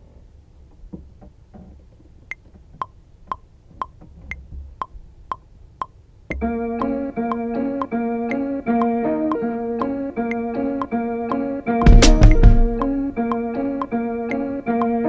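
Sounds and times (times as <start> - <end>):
metronome clicking: 2.2 - 15.0
higher-pitched metronome click: 2.3 - 15.0
plucked guitar beat: 6.3 - 15.0.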